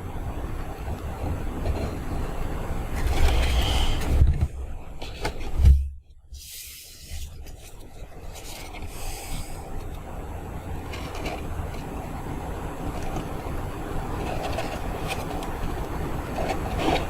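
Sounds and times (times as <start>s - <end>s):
paper rubbing and handling: 6.8s - 9.9s, 14.1s - 17.0s.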